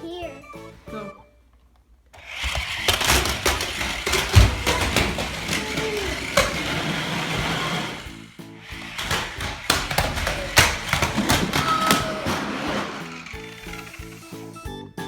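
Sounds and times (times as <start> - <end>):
plastic clattering and knocks: 2.2 - 14.2
toy vehicle electric motor whirring: 2.2 - 14.6.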